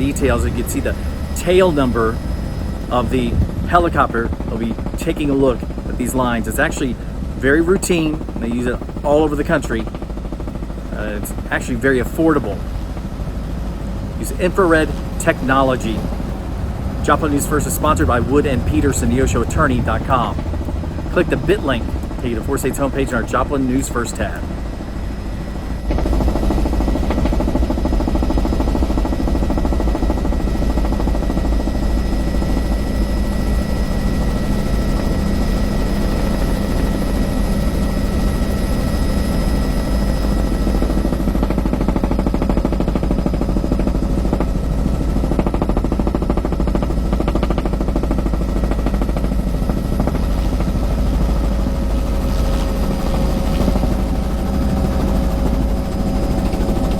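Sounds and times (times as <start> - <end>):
helicopter engine whine: 0.0 - 56.9
helicopter rotor rumble: 0.0 - 56.9
low tone: 14.2 - 26.1.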